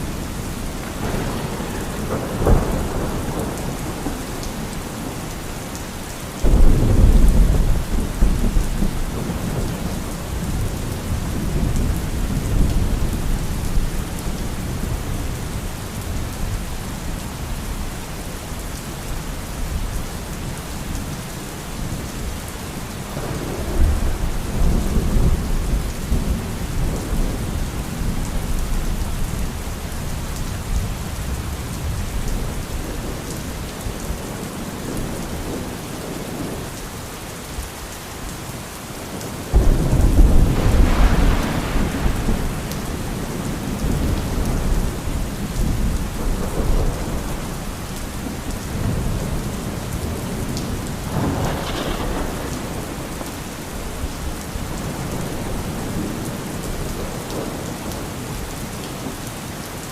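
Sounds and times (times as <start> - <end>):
rolling thunder: 0.0 - 5.8, 6.4 - 16.7, 23.1 - 36.6, 39.5 - 58.1
steady rain: 0.0 - 59.9
loud thunderclap: 0.8 - 5.2, 6.4 - 14.0, 39.5 - 47.7, 50.8 - 53.4.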